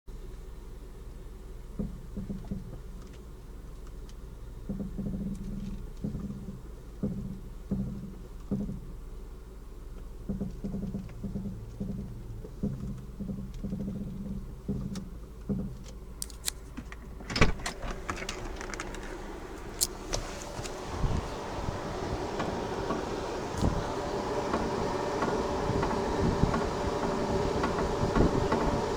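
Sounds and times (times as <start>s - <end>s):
car suspension creaking: 9.9s - 28.9s.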